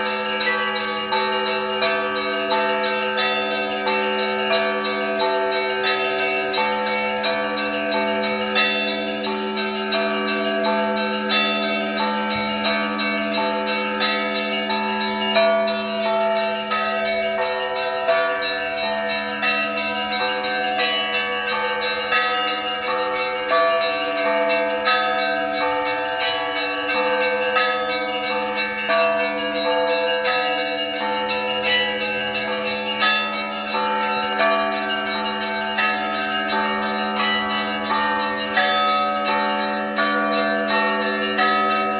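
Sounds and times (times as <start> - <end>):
church bells ringing: 0.0 - 41.9
low hum of large bell: 0.0 - 41.9.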